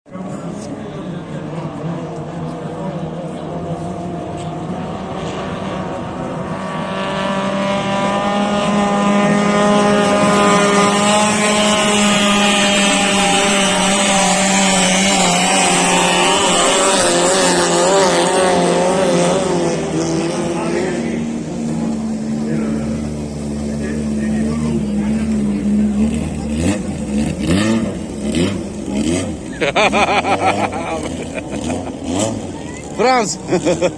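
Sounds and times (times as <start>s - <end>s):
powerboat engines running hard: 8.9s - 33.9s.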